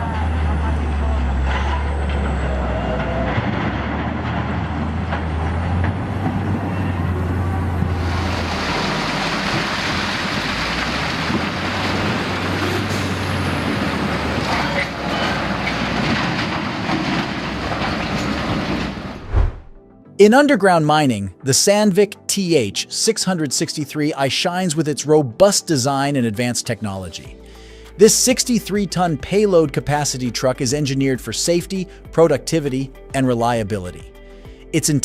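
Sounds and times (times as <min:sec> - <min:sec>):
low engine rumble: 0:00.0 - 0:19.8.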